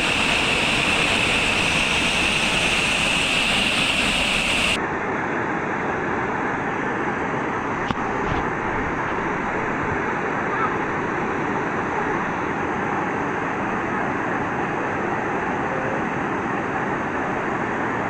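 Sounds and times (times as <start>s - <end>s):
steady high hum: 0.0s - 4.8s
waterfall rushing: 0.0s - 4.8s.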